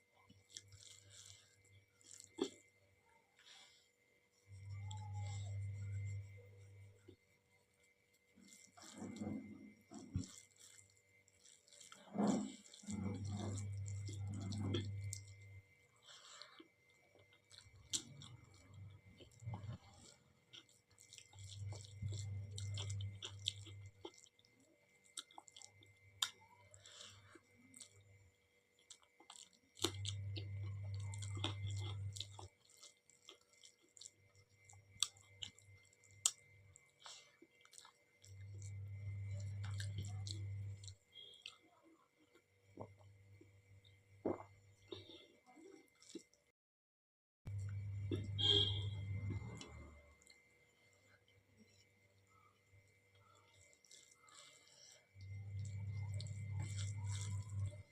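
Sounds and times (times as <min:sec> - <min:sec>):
person chewing food: 0:00.1 - 0:03.8, 0:04.5 - 0:06.4, 0:07.8 - 0:46.5, 0:47.5 - 0:57.9
low hum: 0:47.5 - 0:50.5.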